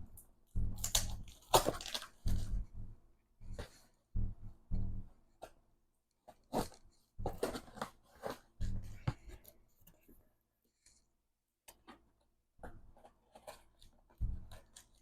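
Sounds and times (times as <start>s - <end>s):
dull thumps: 0.0s - 5.2s, 14.1s - 14.7s.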